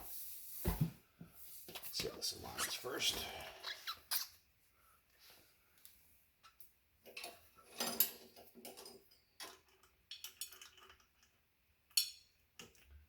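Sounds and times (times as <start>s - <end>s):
bike parts clicking and knocking: 6.4s - 13.0s.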